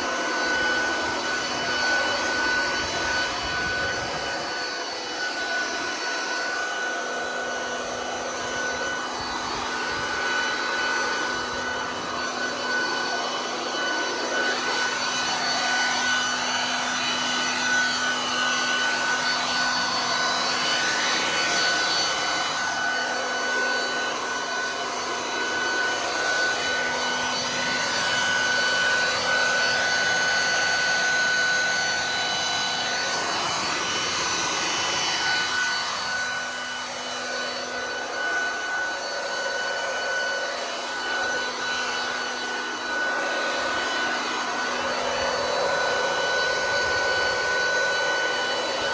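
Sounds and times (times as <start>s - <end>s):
leaf vacuum motor whine: 0.0s - 48.9s.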